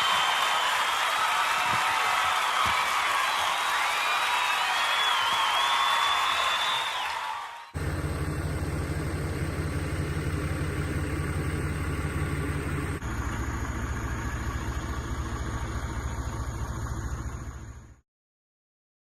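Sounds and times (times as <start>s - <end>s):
excavator engine running: 7.8s - 18.0s.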